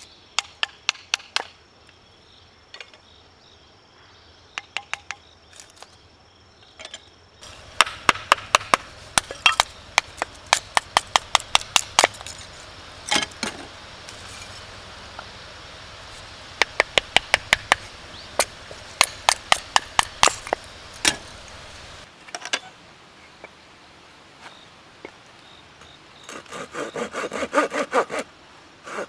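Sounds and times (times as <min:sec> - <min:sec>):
hatchet chopping wood: 0:07.4 - 0:22.0.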